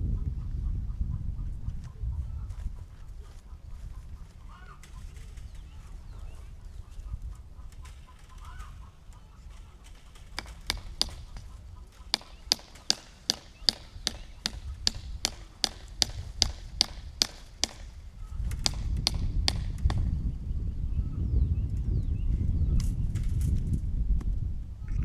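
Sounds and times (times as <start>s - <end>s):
hammer strikes: 10.2s - 18.0s, 18.6s - 20.1s.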